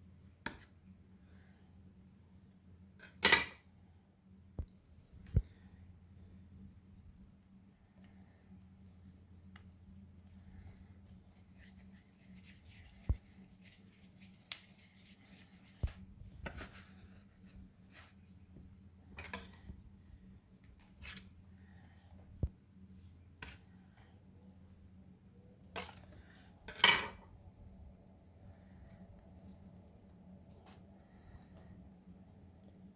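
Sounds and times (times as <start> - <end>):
rustling: 8.0 - 19.7.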